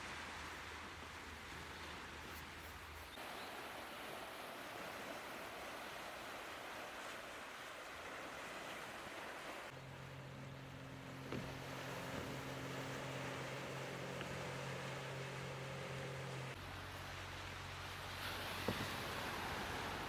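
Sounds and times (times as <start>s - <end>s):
sea surf rushing: 3.1s - 20.0s
low steady hum: 9.6s - 20.0s.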